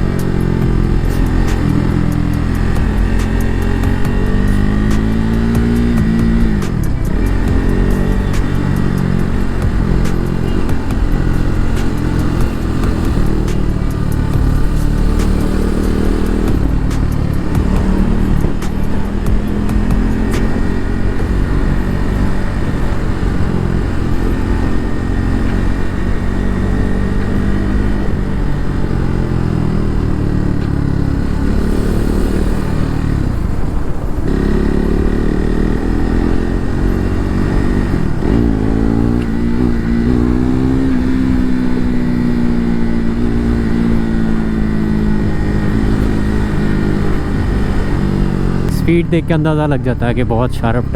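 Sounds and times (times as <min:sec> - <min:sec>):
motorcycle engine revving: 0:00.0 - 0:50.9.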